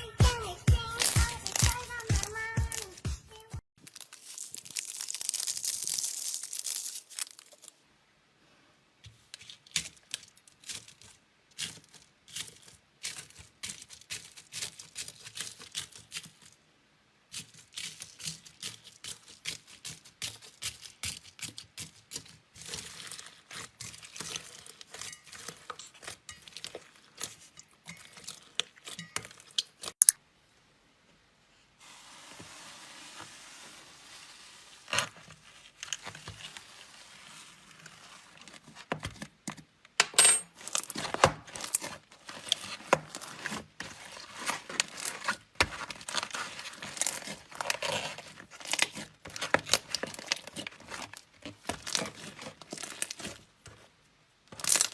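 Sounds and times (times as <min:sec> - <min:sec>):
slime crackling and popping: 0:03.8 - 0:07.7, 0:40.7 - 0:53.4, 0:54.5 - 0:54.9.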